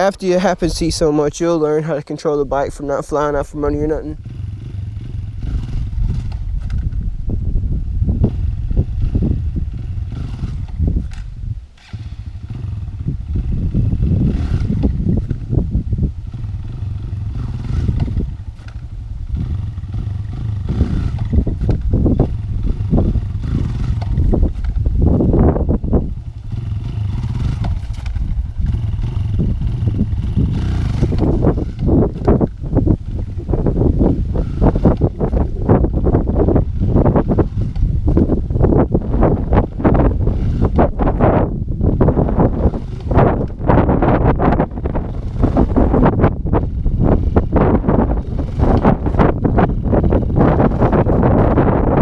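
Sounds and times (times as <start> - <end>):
dirt bike engine revving: 0.0 - 52.0.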